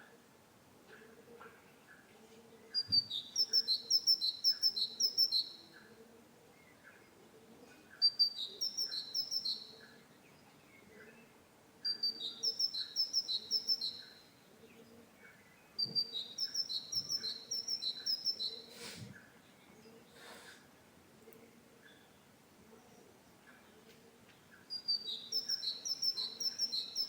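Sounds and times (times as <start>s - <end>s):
great tit singing: 2.8s - 5.9s, 8.0s - 14.4s, 15.2s - 20.7s, 24.4s - 27.0s.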